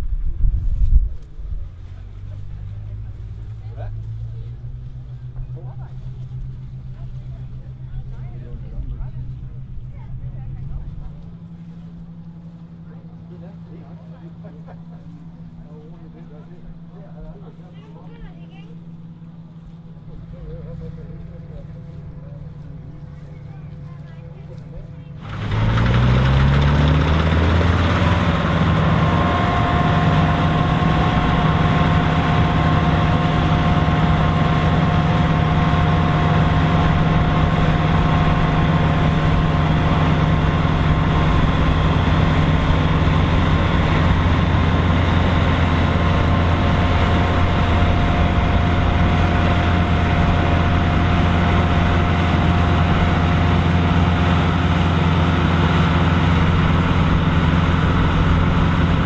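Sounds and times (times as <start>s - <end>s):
combine harvester engine running: 0.0s - 59.0s.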